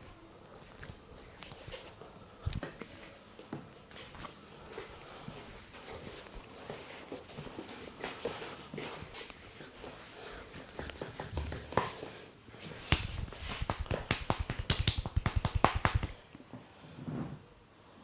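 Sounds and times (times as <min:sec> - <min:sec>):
fast sharp hand slaps: 0:12.8 - 0:16.2
hands tapping and rubbing head: 0:12.8 - 0:16.2.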